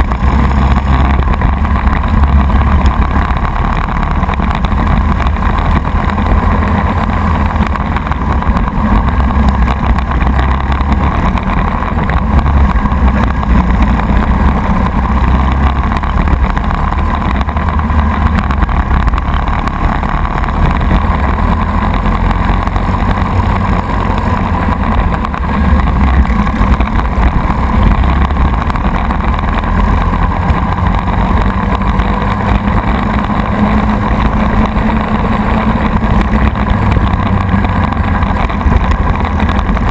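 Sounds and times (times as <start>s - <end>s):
kart engine running hard: 0.0s - 39.9s
wind on microphone: 0.0s - 39.9s.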